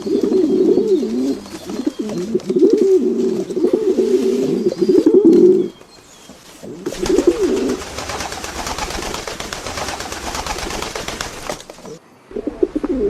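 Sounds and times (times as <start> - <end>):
pigeons cooing: 0.0 - 13.0
dense rustling clicking noise: 5.3 - 12.0.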